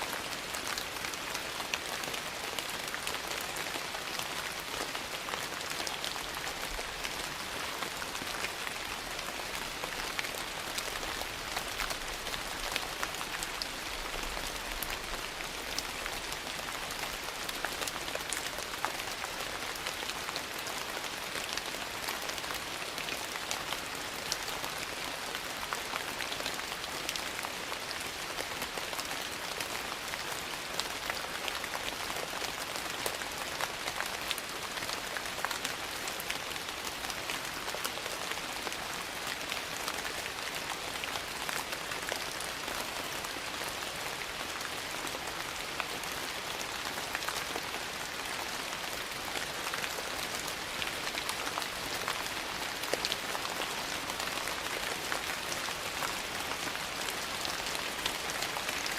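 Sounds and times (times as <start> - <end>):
steady rain: 0.0 - 58.9.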